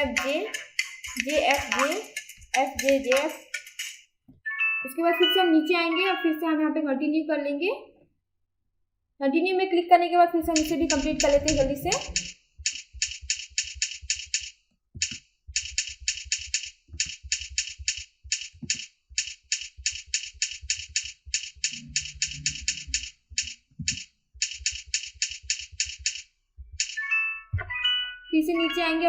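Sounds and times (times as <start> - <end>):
computer keyboard typing: 0.0 - 4.0, 10.4 - 27.0.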